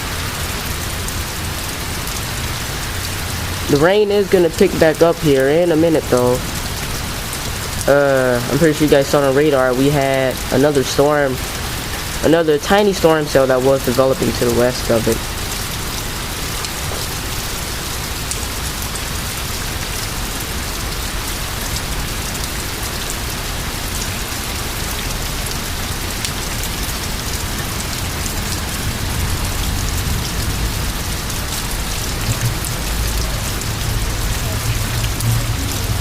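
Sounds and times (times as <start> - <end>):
rain hitting surfaces: 0.0 - 36.0
low thunder rumble: 28.3 - 36.0.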